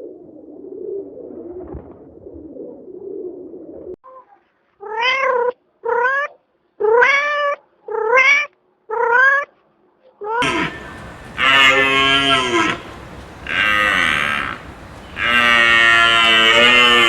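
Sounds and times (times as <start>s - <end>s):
low uneven murmur: 10.4s - 17.0s.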